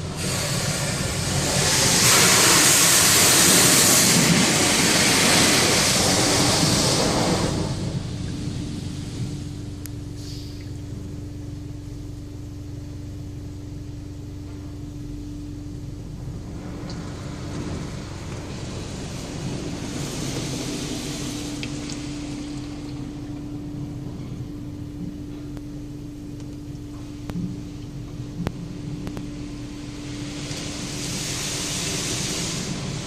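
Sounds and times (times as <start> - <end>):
rushing hiss of water: 0.0 - 9.4, 10.2 - 10.7, 16.6 - 22.9, 29.6 - 33.0
car wash machinery hum: 0.0 - 33.0.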